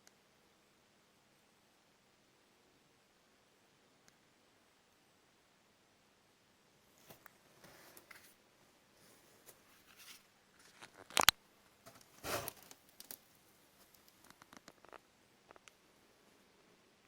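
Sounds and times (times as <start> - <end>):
faint small clicks: 12.5 - 15.8.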